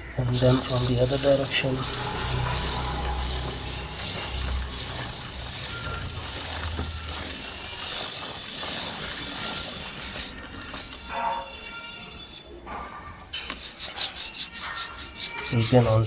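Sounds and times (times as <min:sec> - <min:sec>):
brush scrubbing chain: 0:00.2 - 0:11.4, 0:13.4 - 0:16.0
chain clicking over sprocket: 0:00.3 - 0:11.2.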